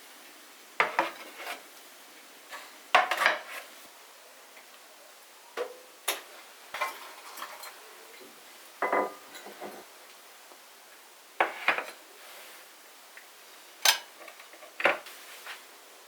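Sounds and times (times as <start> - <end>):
dishes clinking together: 8.8 - 9.8.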